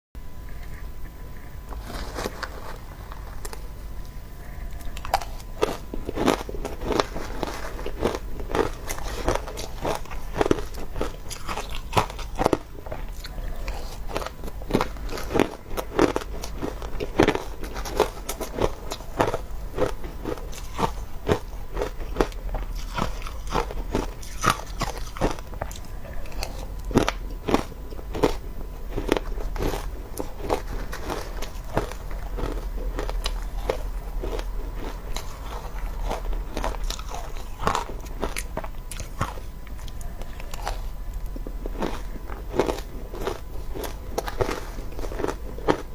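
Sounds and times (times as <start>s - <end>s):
chewing crunchy ice: 0.5s - 45.9s.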